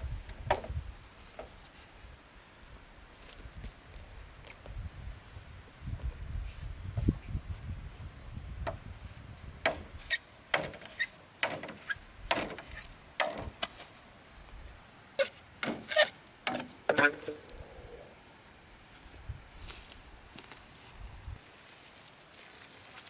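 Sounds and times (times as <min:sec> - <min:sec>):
sharp knocks with ringing tail: 0:09.7 - 0:09.9, 0:10.6 - 0:13.7.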